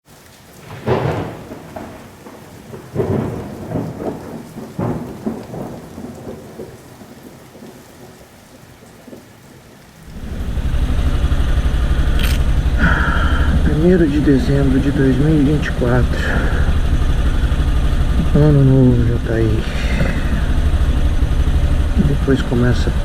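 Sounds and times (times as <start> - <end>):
rain falling: 0.0 - 23.0
thunder rumbling: 0.6 - 7.7, 10.0 - 23.0
motorcycle engine idling: 10.1 - 23.0.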